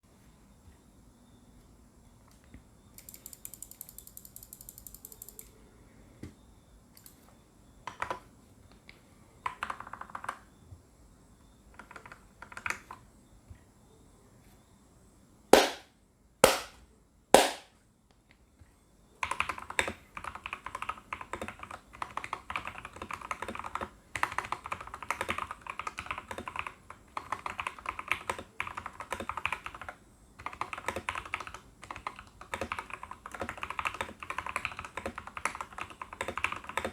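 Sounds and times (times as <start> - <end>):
mechanical keyboard typing: 3.0 - 5.6, 9.4 - 10.4, 11.7 - 13.0, 19.2 - 36.9.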